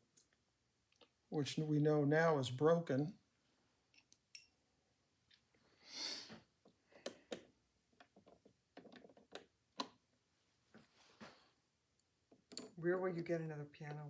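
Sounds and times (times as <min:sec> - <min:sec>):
pliers clicking on metal: 0:12.5 - 0:12.8.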